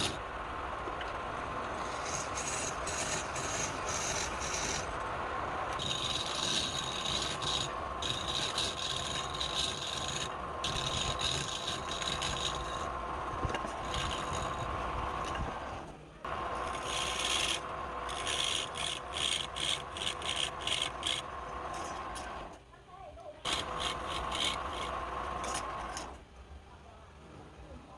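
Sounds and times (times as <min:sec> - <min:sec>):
wood lathe humming: 0:01.6 - 0:15.4, 0:16.3 - 0:22.5, 0:23.5 - 0:25.9
tool scraping spinning wood: 0:01.6 - 0:22.5, 0:23.5 - 0:26.2.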